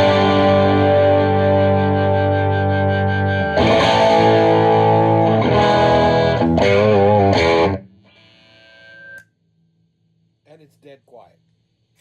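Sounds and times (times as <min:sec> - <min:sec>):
distorted electric guitar chords: 0:00.0 - 0:09.2
faint amp hum: 0:00.0 - 0:12.0.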